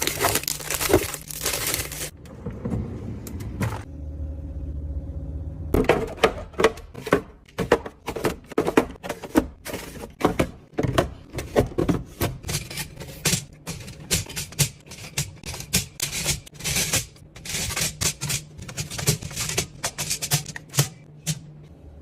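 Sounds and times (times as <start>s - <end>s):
household items clattering: 0.0s - 2.1s, 5.8s - 21.1s
low hum: 2.2s - 5.8s.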